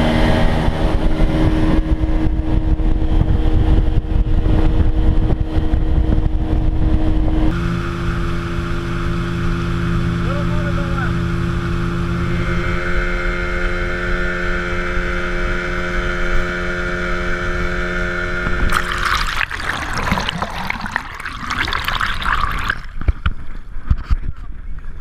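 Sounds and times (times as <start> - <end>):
rushing water: 18.7 - 23.2.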